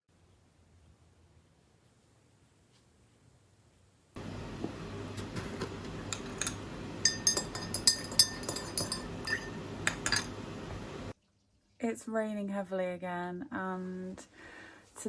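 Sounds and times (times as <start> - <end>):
sharp clinks and pings: 6.5 - 10.3.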